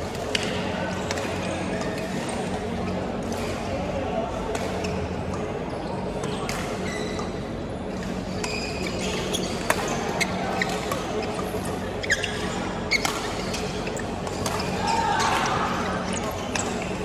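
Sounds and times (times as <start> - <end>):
shoes squeaking on court floor: 5.7 - 17.0
racket hitting shuttlecock: 12.9 - 16.8.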